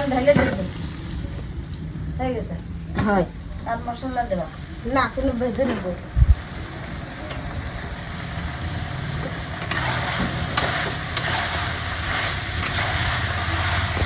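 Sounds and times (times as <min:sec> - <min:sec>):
chicken sizzling in hot oil: 0:00.0 - 0:14.0
steady low hum: 0:00.0 - 0:14.0
utensil clicking against pan: 0:09.6 - 0:11.5, 0:12.6 - 0:12.9.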